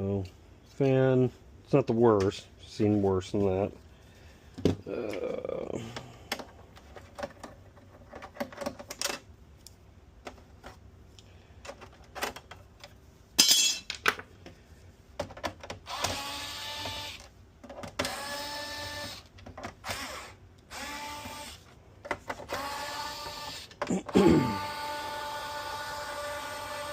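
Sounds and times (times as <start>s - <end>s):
clicks and clatter of parts: 5.9s - 14.6s, 15.2s - 16.2s, 16.8s - 18.2s, 19.1s - 19.9s, 22.0s - 22.6s
small electric motor whirring: 15.9s - 17.3s, 18.0s - 21.6s, 22.5s - 23.7s, 24.5s - 26.9s.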